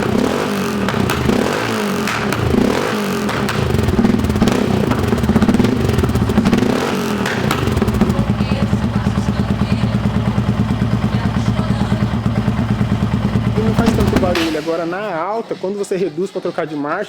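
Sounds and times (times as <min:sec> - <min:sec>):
motorcycle engine revving and idling: 0:00.0 - 0:15.0.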